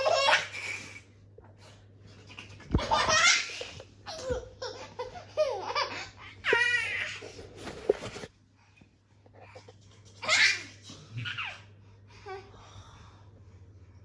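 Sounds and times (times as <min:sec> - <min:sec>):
small child laughing: 0:02.6 - 0:07.3.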